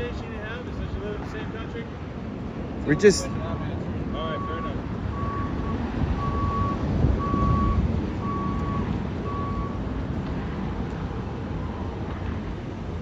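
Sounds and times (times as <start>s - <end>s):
vehicle reversing alarm beeping: 2.9s - 9.8s.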